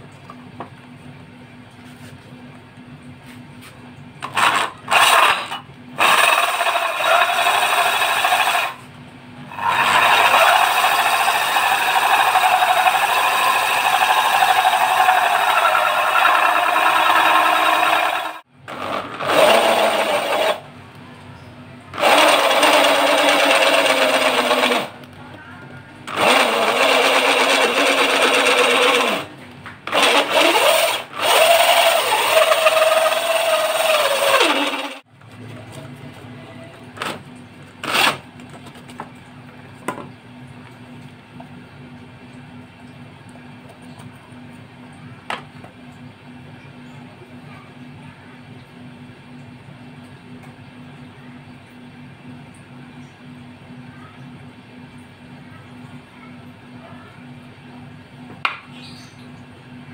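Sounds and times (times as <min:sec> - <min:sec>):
electric drill with hole saw cutting wood: 0:04.2 - 0:08.8, 0:09.5 - 0:20.6, 0:22.0 - 0:24.9, 0:26.1 - 0:29.3, 0:29.9 - 0:35.0, 0:37.8 - 0:38.2.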